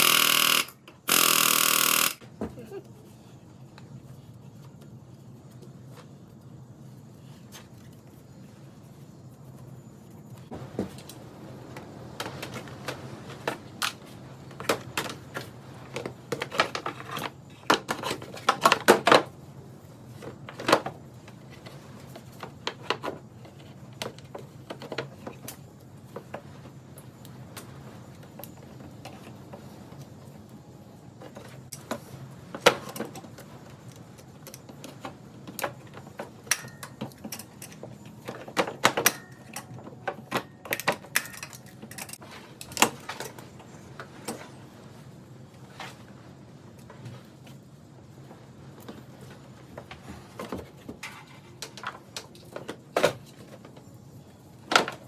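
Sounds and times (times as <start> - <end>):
hand tools clicking and clattering: 31.3 - 44.5.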